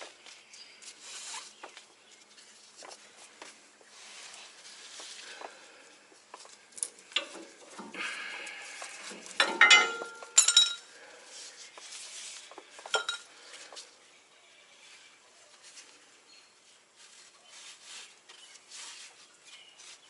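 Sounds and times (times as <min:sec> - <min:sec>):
metal hardware clinking: 0:09.3 - 0:10.9.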